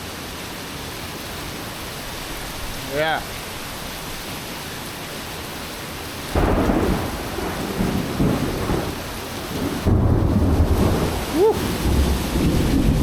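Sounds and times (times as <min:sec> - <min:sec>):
heavy rain hissing: 0:00.0 - 0:13.0
thunder clap and rumbling: 0:06.4 - 0:13.0.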